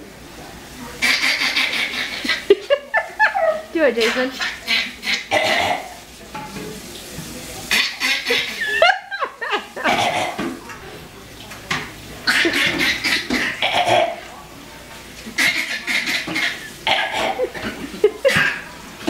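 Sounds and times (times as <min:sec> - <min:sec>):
laughter: 0:02.1 - 0:03.7, 0:08.2 - 0:10.0, 0:16.6 - 0:18.6
baby and adult fake coughing: 0:05.3 - 0:05.9, 0:09.9 - 0:10.4, 0:12.3 - 0:14.2, 0:15.4 - 0:18.6.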